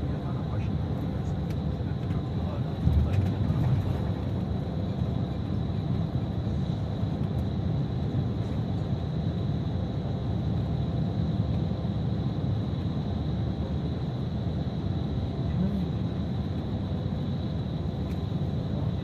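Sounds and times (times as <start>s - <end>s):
bus engine and road rumble: 0.0s - 19.0s.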